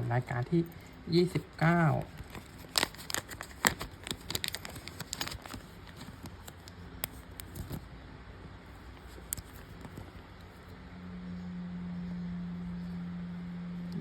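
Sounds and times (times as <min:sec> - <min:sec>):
faint low hum: 0:00.0 - 0:14.0
light clicks and rustles: 0:08.9 - 0:10.6.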